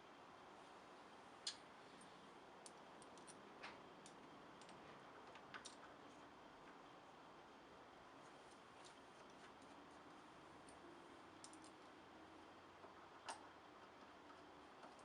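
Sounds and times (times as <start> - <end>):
small metal parts clicking: 2.6 - 3.4, 11.4 - 11.9.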